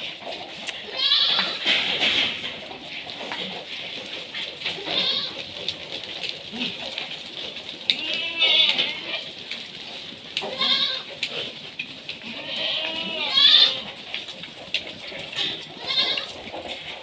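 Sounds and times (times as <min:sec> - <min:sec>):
goats bleating: 0:00.0 - 0:01.9, 0:04.4 - 0:07.1, 0:07.8 - 0:09.5, 0:10.3 - 0:14.2, 0:15.2 - 0:16.7.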